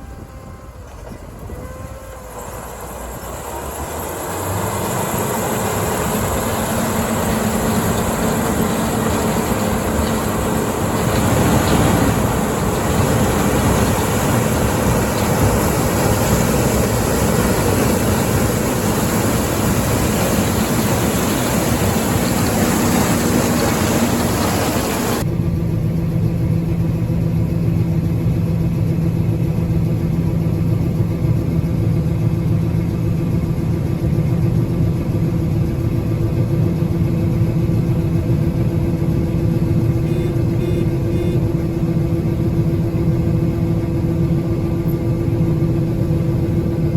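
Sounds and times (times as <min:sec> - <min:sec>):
loud machine noise: 0:00.0 - 0:25.2, 0:39.4 - 0:46.7
engine drone with low hum: 0:00.0 - 0:46.9.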